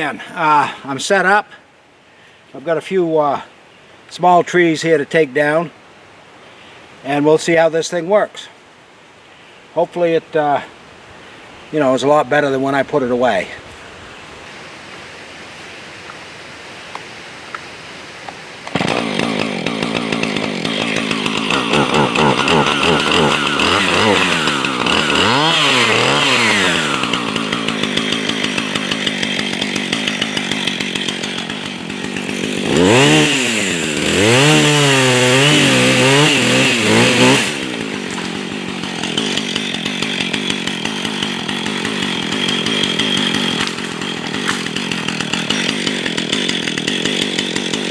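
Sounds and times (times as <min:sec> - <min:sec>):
chainsaw cutting small trees: 0:16.9 - 0:47.9.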